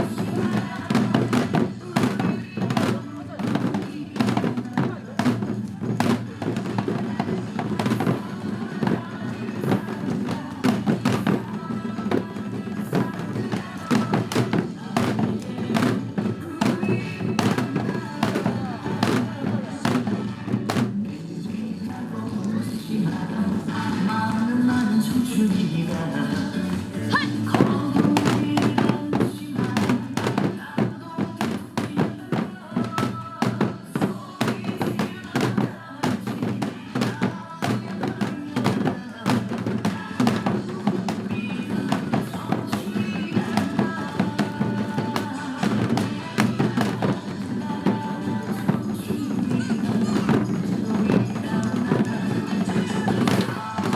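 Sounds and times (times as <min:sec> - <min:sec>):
backing track music: 0:00.0 - 0:53.9.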